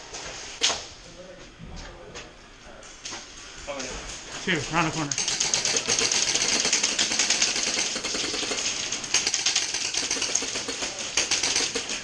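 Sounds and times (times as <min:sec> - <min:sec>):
airsoft guns firing bursts: 0:05.1 - 0:12.0.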